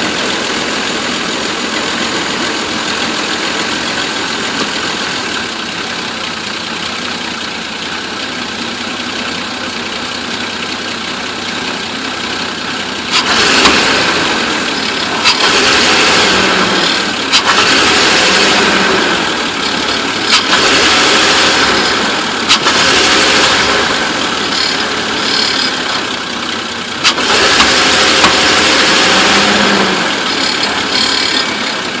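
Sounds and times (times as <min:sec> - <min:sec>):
van engine misfiring and revving: 0:00.0 - 0:32.0
sharp engine cracks: 0:13.0 - 0:16.5, 0:17.2 - 0:18.0, 0:19.6 - 0:21.8, 0:22.4 - 0:32.0.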